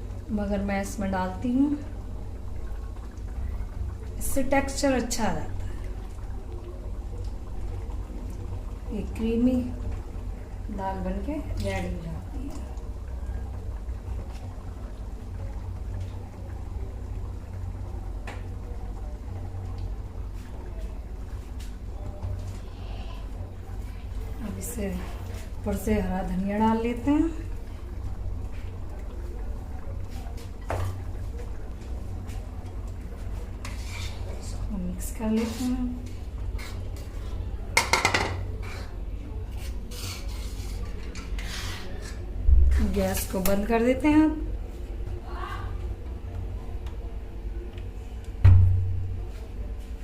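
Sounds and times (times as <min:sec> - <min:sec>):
pan cooking on gas stove rumble: 0:00.0 - 0:50.0.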